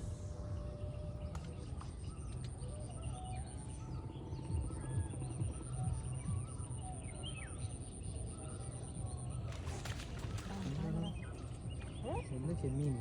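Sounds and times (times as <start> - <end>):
constant low rumble: 0.0 - 13.0
birds chirping: 9.5 - 13.0.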